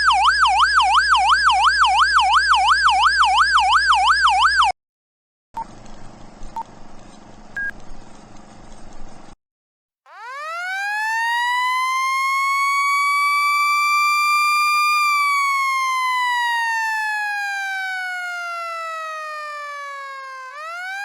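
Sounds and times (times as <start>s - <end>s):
siren winding up and down: 0.0s - 4.8s, 10.1s - 21.0s.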